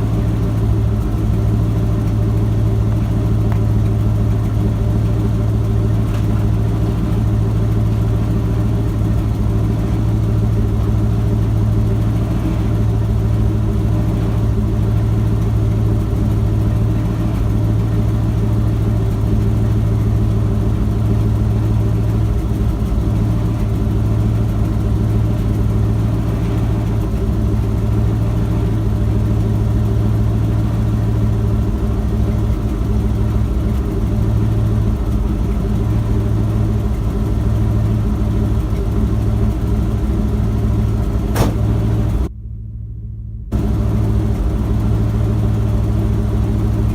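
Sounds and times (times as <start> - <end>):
truck engine idling: 0.0 - 46.9.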